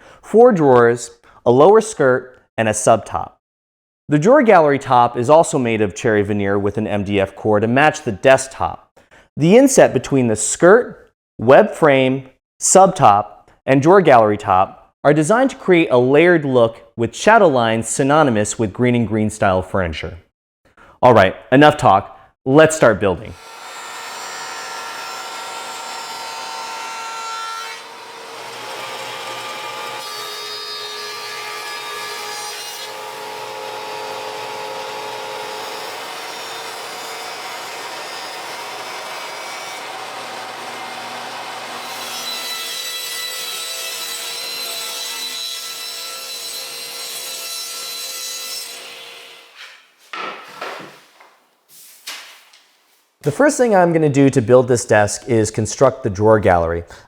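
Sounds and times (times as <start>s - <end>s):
power saw cutting wood: 23.4s - 49.8s
sharp knocks: 50.1s - 50.9s.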